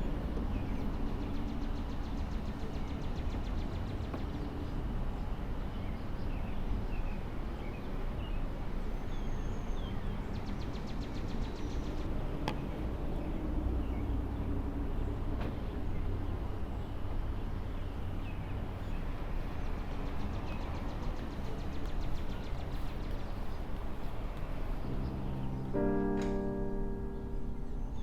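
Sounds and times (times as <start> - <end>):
birds chirping: 0.0 - 28.0
sharp click: 26.2 - 26.4.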